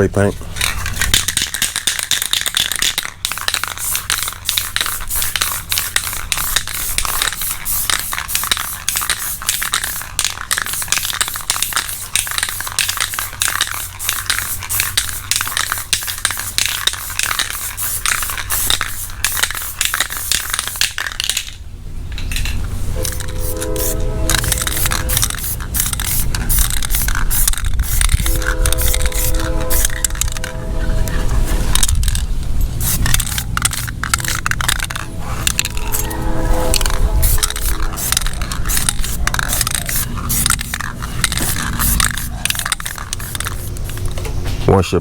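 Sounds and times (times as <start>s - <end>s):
spray paint can hissing: 0.6s - 21.6s, 23.0s - 44.2s.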